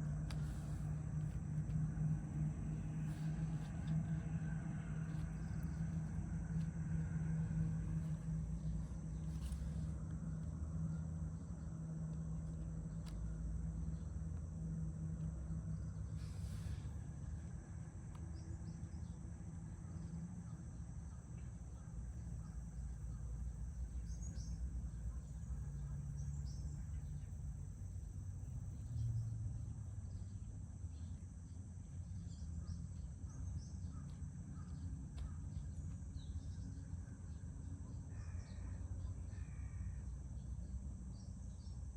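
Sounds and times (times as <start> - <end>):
steady low hum: 0.0 - 41.9.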